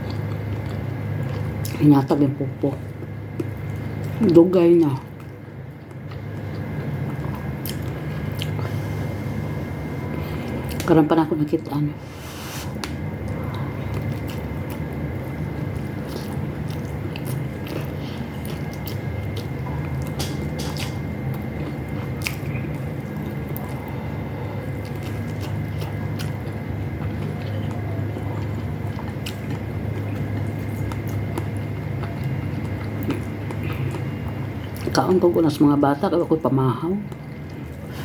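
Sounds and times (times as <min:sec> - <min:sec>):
person chewing food: 0:00.0 - 0:01.8, 0:02.8 - 0:04.3, 0:05.0 - 0:10.9, 0:12.0 - 0:35.0, 0:37.0 - 0:38.0
steady low hum: 0:00.0 - 0:38.0.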